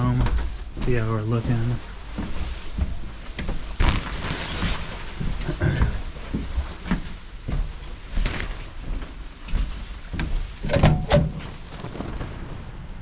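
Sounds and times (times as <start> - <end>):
footsteps outdoors: 0.0 - 13.0
clatter of knocks: 10.6 - 11.5.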